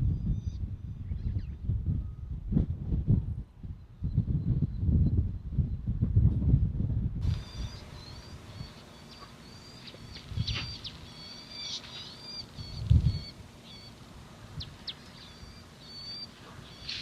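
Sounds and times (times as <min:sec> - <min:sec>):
birds chirping: 0:07.2 - 0:17.0.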